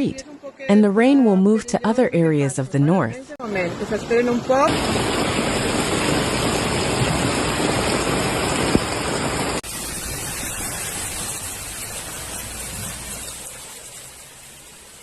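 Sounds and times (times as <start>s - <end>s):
flood water rushing: 3.4s - 15.0s.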